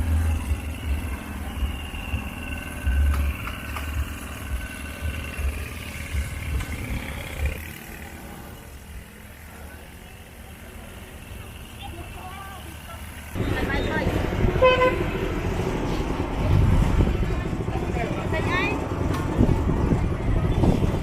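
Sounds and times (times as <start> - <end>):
low engine rumble: 0.0 - 21.0.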